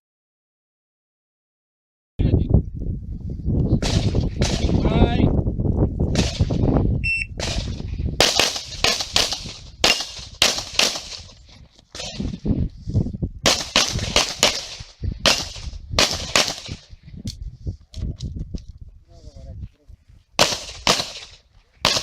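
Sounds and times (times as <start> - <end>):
pistol shots: 7.4 - 11.3, 13.5 - 16.8, 20.4 - 22.0.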